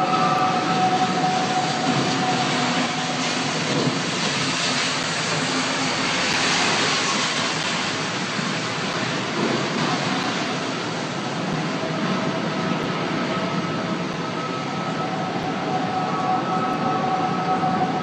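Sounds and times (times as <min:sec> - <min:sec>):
steady rushing roar: 0:00.0 - 0:18.0
faint whining tones: 0:09.9 - 0:18.0.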